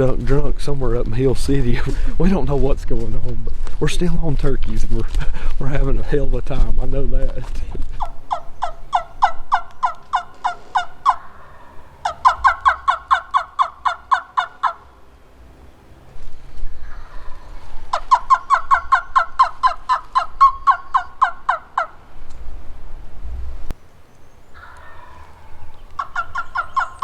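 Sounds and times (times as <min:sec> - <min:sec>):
turkey yelping: 0:08.0 - 0:15.0, 0:16.8 - 0:22.0, 0:24.3 - 0:27.0.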